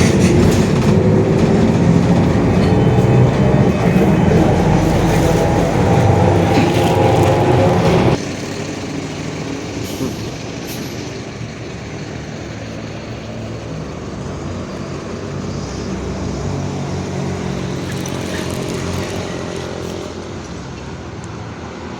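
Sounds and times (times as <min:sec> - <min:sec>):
bus engine running: 0:00.0 - 0:21.9
air brake hisses: 0:09.8 - 0:11.2.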